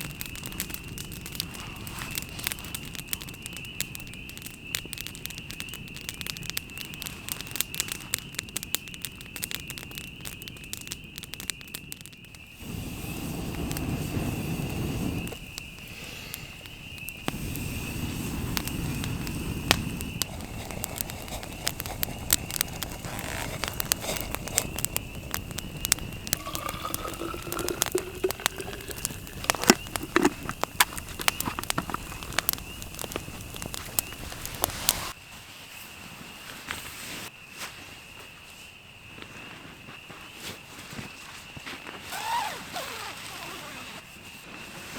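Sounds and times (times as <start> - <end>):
campfire crackling and popping: 0.0 - 35.2.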